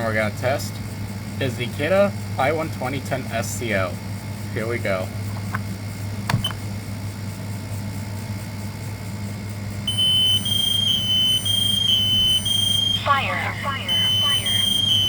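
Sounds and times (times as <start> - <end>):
smoke alarms beeping: 9.9 - 15.0.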